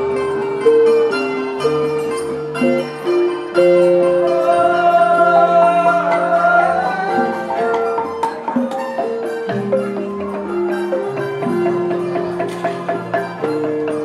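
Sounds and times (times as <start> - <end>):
mallet-struck notes: 0.0 - 14.0
wavering high melody: 0.0 - 14.0.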